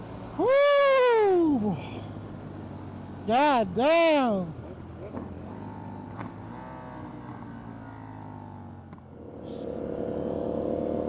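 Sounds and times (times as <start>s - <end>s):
motorcycle engine at low revs: 4.6s - 11.0s.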